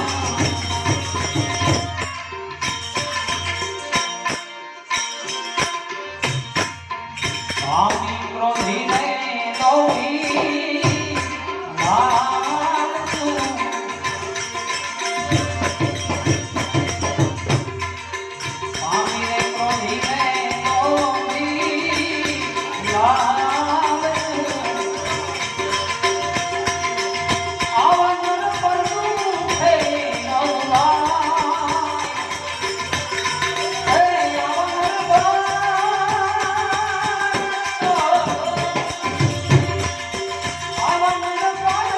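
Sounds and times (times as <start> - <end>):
hand drums beat: 0.0 - 4.4, 13.1 - 41.9
devotional folk music: 0.0 - 41.9
jingling percussion: 0.0 - 41.9.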